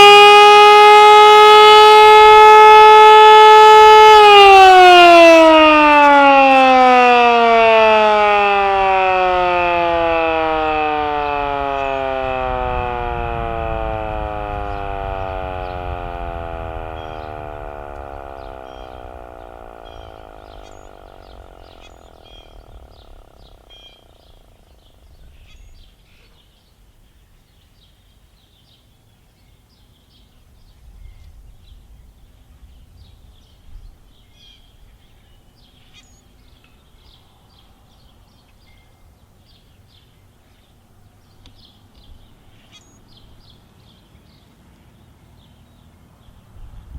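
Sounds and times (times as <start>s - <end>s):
warning siren winding down: 0.0s - 25.0s
birds chirping: 0.0s - 28.8s.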